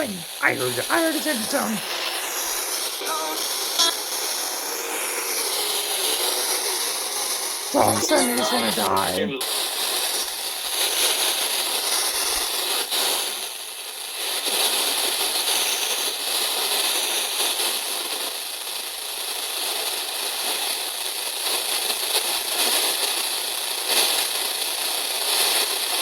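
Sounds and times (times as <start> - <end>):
faint radio crackle: 0.0 - 4.0, 7.8 - 9.5
radio static hiss: 0.0 - 5.0, 7.8 - 9.5.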